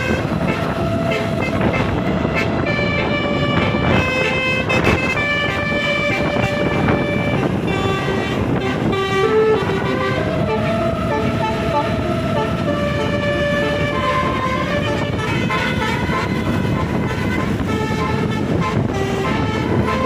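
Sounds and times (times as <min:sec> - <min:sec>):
musical air horn playing tune: 0:00.0 - 0:20.0
steady low rumble: 0:00.0 - 0:20.0.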